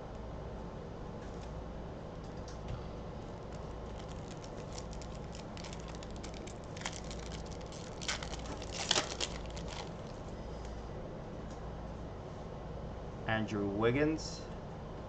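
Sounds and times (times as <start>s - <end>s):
cards and wrapper crinkling: 3.2s - 10.7s.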